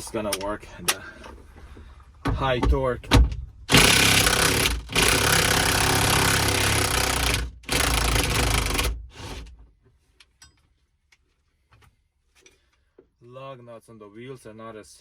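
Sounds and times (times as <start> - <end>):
impact wrench hammering: 3.7 - 9.0.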